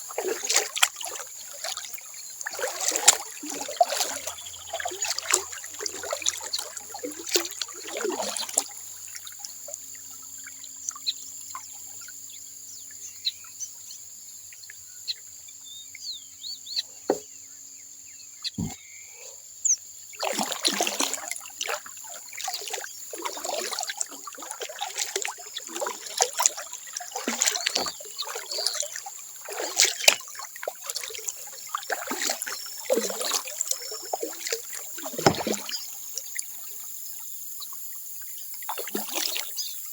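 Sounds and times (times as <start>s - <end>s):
kayak paddle strokes splashing: 0.0s - 11.2s, 17.1s - 17.3s, 18.6s - 18.8s, 20.1s - 36.6s
water dripping off paddle: 0.1s - 10.2s, 20.2s - 36.5s.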